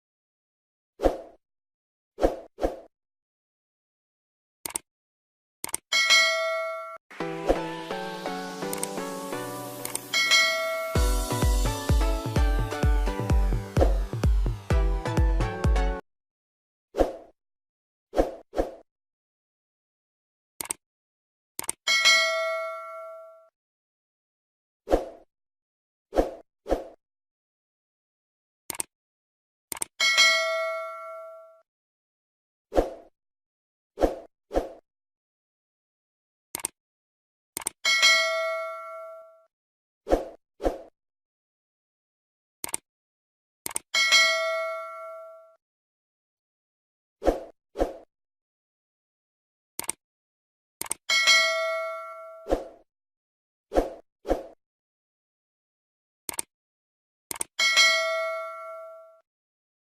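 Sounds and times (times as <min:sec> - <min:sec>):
sharp click: 0:04.6 - 0:04.8, 0:05.6 - 0:05.8, 0:08.7 - 0:09.0, 0:09.8 - 0:10.1, 0:20.6 - 0:20.8, 0:21.6 - 0:21.8, 0:28.7 - 0:28.9, 0:29.7 - 0:29.9, 0:36.5 - 0:36.8, 0:37.6 - 0:37.8, 0:42.6 - 0:42.8, 0:43.6 - 0:43.8, 0:49.8 - 0:50.0, 0:50.8 - 0:51.0, 0:56.3 - 0:56.5, 0:57.3 - 0:57.5
chiming music: 0:07.2 - 0:13.8
notification bell chime: 0:10.1 - 0:11.0
notification bell ding: 0:10.1 - 0:11.0, 0:57.6 - 0:59.0.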